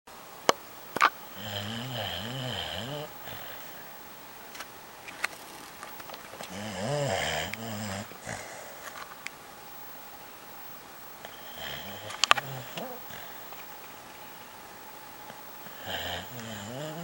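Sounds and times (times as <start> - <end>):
dog snoring: 1.3 - 3.8, 6.4 - 8.8, 11.2 - 13.4, 15.6 - 17.0.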